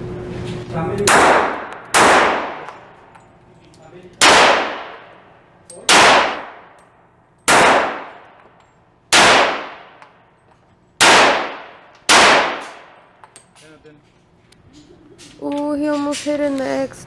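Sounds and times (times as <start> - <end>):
echoing gunshots: 1.0 - 3.0, 4.2 - 6.8, 7.5 - 8.4, 9.1 - 10.2, 11.0 - 13.1.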